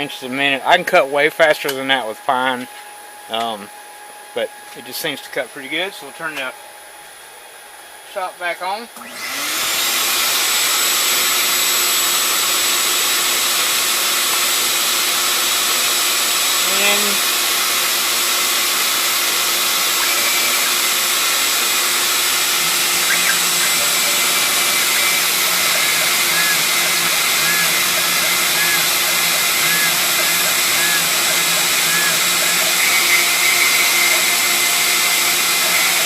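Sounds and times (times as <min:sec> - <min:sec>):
shop vacuum whining: 0:08.9 - 0:36.0.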